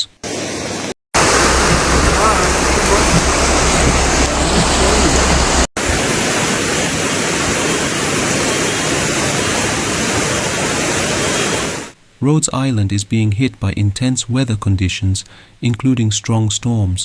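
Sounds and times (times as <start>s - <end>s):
loud rushing water: 0.2s - 12.0s
low rumble: 1.2s - 6.2s.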